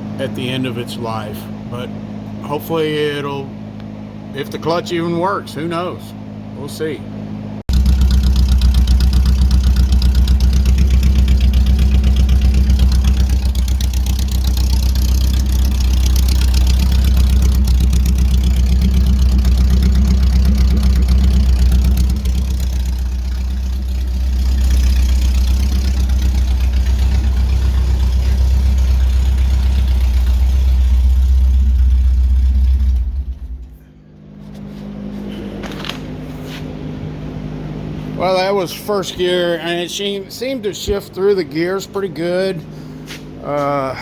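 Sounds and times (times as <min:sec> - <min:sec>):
car engine running: 0:00.0 - 0:44.0.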